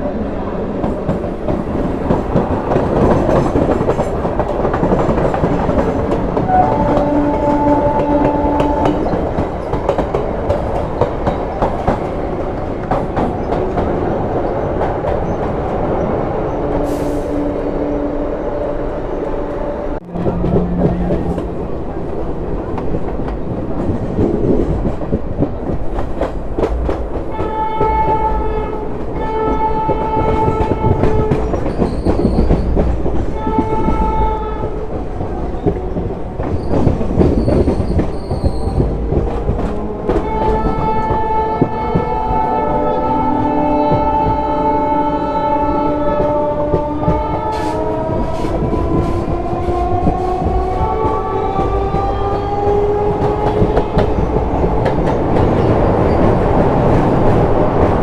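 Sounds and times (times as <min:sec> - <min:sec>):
train wheels clickety-clack on track: 0:00.0 - 0:17.5, 0:20.0 - 0:58.0
locomotive horn blasts: 0:06.4 - 0:09.2, 0:27.3 - 0:31.4, 0:33.4 - 0:36.1, 0:39.8 - 0:54.0
higher-pitched horn notes: 0:06.5 - 0:09.1, 0:39.8 - 0:49.0.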